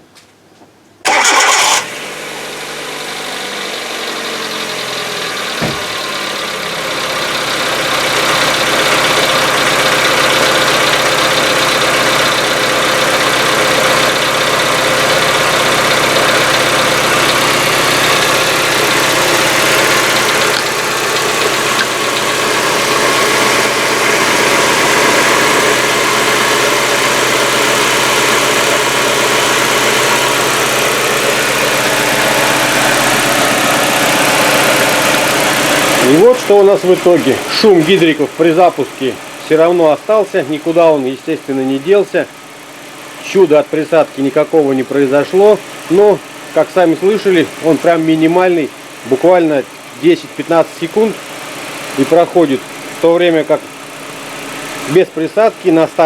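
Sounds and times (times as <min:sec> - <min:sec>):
car engine idling: 0:01.0 - 0:56.0
engine cranking: 0:01.1 - 0:02.0, 0:04.6 - 0:56.0
valve lifters tapping: 0:20.1 - 0:22.4.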